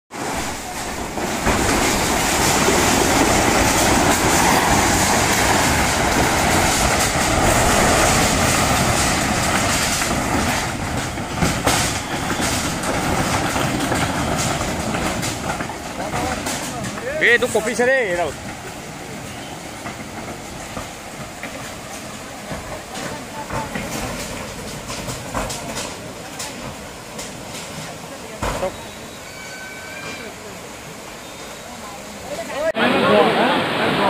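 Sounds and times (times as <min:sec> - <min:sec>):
floodwater rushing: 0:00.1 - 0:34.0.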